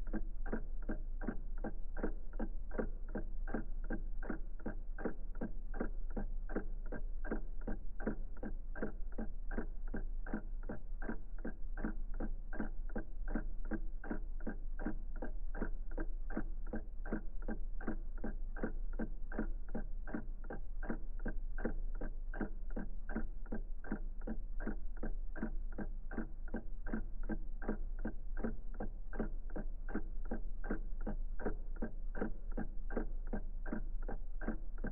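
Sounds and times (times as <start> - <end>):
mechanical clock ticking: 0.0 - 34.9
steady low hum: 0.0 - 34.9.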